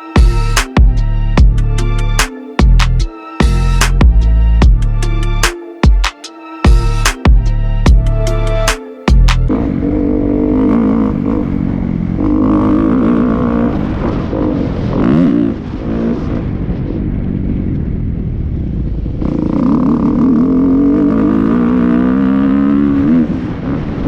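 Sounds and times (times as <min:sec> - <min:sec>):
dirt bike engine revving: 0:09.4 - 0:16.2, 0:19.3 - 0:24.0.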